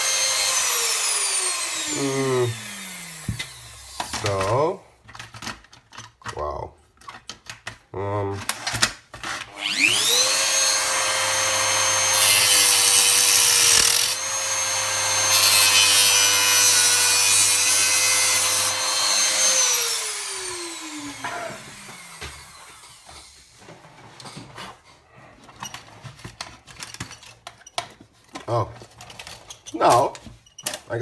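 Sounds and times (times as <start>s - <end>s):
rotary tool whining: 0.0s - 4.6s, 9.5s - 23.4s
rotary tool grinding metal: 0.0s - 4.7s, 9.4s - 23.4s.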